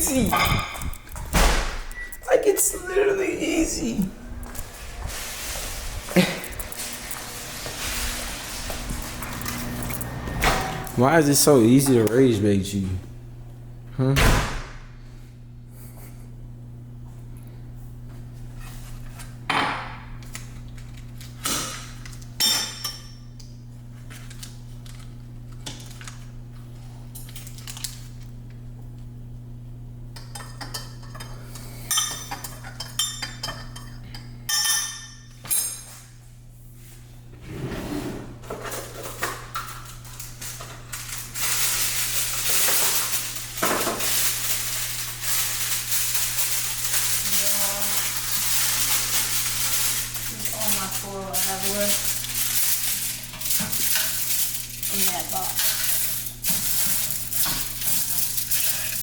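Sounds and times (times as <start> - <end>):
dishes and utensils clattering: 0.0 - 1.1, 30.2 - 36.0, 38.4 - 59.0
steady low hum: 0.0 - 59.0
noisy scraping: 4.0 - 11.7.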